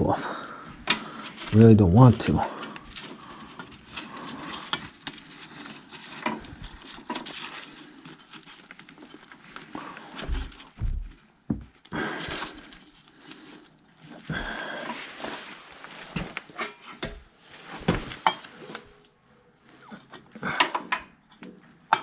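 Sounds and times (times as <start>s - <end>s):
hands and tools clicking and rustling: 0.6s - 19.2s, 19.9s - 22.0s.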